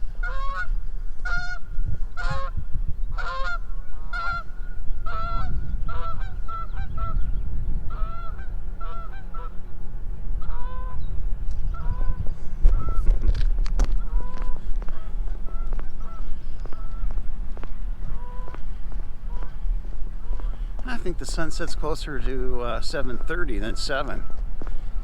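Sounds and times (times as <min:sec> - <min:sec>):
geese honking: 0:00.2 - 0:07.3, 0:07.9 - 0:09.8, 0:10.4 - 0:11.0, 0:11.7 - 0:13.2, 0:13.8 - 0:25.0.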